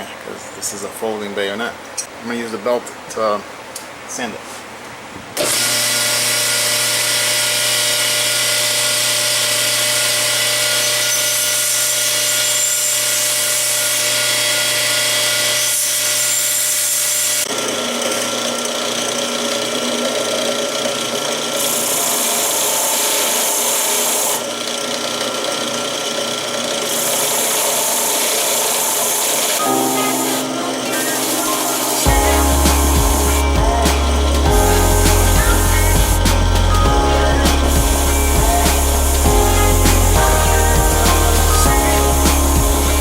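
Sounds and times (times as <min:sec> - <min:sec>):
belt sander grinding metal: 0:05.5 - 0:29.6.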